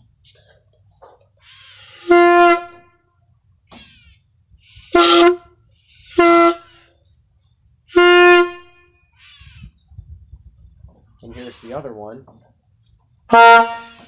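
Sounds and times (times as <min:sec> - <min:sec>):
low-pitched air horn blasts: 0:02.0 - 0:02.9, 0:04.9 - 0:06.8, 0:07.9 - 0:08.8, 0:13.3 - 0:14.0.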